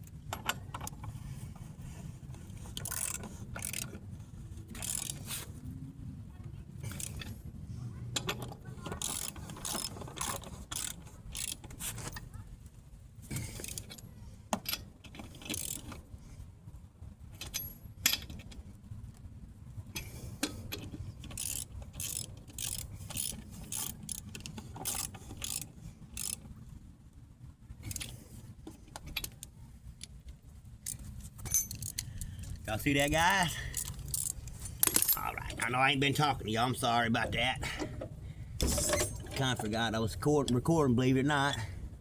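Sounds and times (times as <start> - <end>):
ratchet wrench clicking: 2.7 - 4.0, 4.7 - 5.3, 6.9 - 7.3, 8.2 - 11.6, 15.4 - 16.0, 20.0 - 26.4, 30.8 - 32.6, 33.6 - 35.3.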